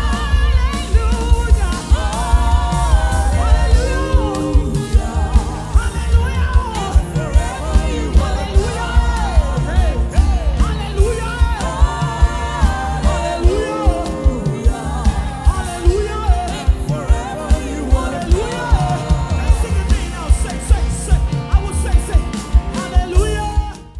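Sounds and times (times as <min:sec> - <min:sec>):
gospel band playing: 0:00.0 - 0:23.9
people singing: 0:00.0 - 0:23.9.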